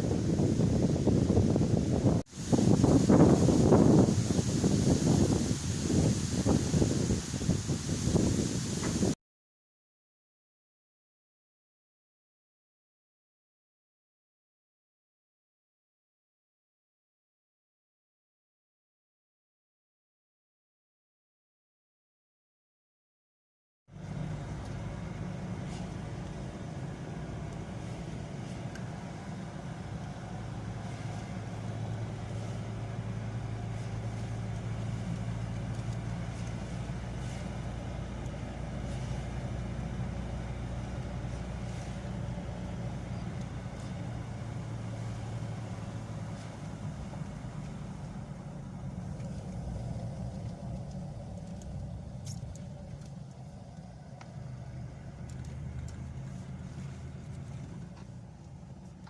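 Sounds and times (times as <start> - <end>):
vehicle engine drone: 0.0 - 9.2, 23.9 - 59.0.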